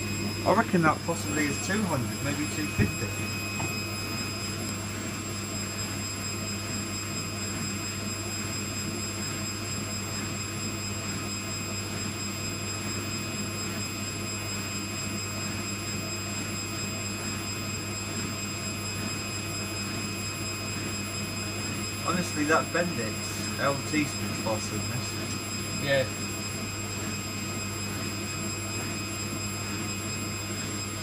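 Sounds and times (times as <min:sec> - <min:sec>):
washing machine drum spinning: 0:00.0 - 0:05.3.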